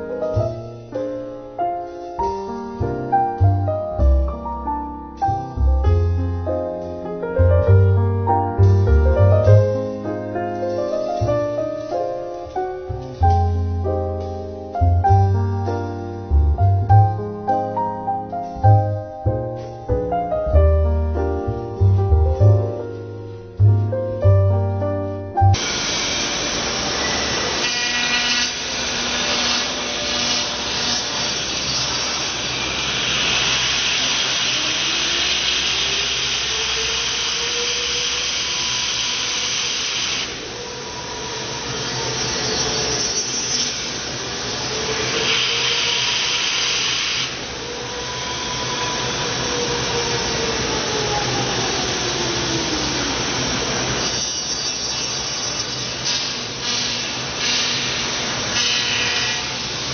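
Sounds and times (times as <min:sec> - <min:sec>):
router bit cutting wood: 0:25.6 - 0:59.9.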